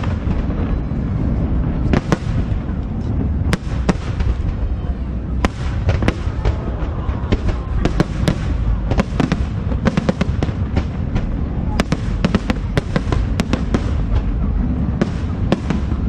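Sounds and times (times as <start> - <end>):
fireworks cracking: 0.0 - 16.0
low rumble of fireworks booms: 0.0 - 16.0.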